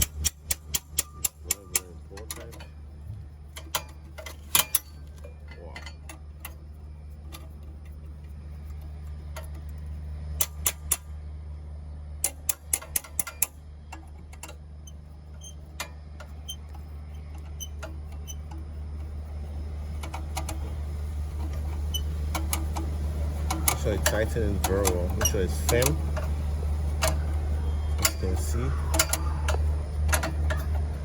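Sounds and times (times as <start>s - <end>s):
metallic clicks of hand tools: 0.0s - 2.7s, 3.6s - 6.6s, 10.4s - 11.0s, 12.2s - 18.6s, 23.5s - 26.3s, 28.0s - 30.9s
steady low hum: 0.0s - 31.0s.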